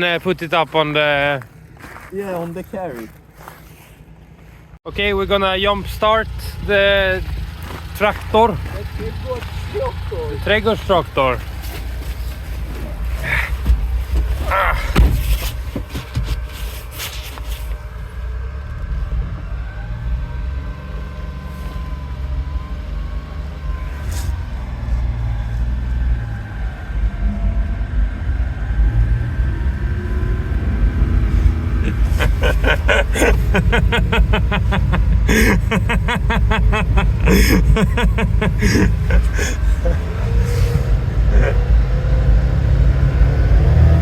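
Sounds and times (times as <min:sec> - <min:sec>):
lawn mower engine revving: 0:05.4 - 0:12.3, 0:27.9 - 0:44.0
steady low rumble: 0:26.2 - 0:44.0.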